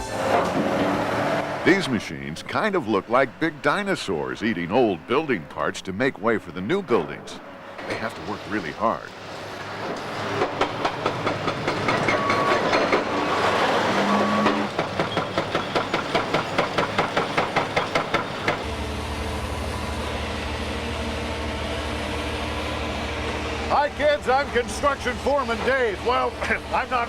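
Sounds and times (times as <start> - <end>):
demolition machinery rumbling: 0.0 - 27.0
fast even machine clatter: 14.7 - 18.6.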